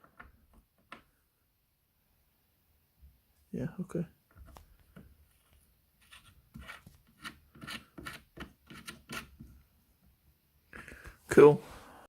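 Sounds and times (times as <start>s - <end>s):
rubbing or scraping strokes: 5.3s - 9.4s.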